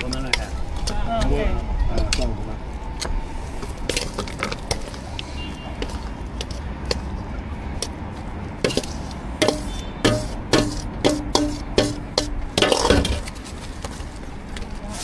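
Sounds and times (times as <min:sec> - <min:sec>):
cleaver chopping on cutting board: 0:08.6 - 0:13.2.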